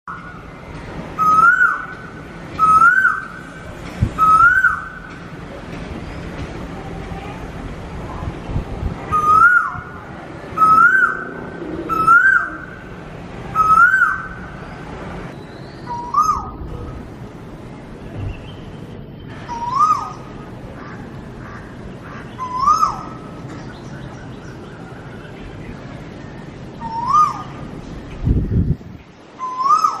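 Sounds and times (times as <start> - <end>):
whistled bird call ringtone: 1.2 - 1.8, 2.6 - 3.3, 4.2 - 5.0
bird whistled call: 1.2 - 2.0, 2.6 - 3.5, 4.2 - 5.0, 9.1 - 9.9, 10.6 - 12.8, 13.6 - 14.4, 15.4 - 16.6, 19.4 - 20.2, 22.4 - 23.2, 26.8 - 27.5, 29.4 - 30.0.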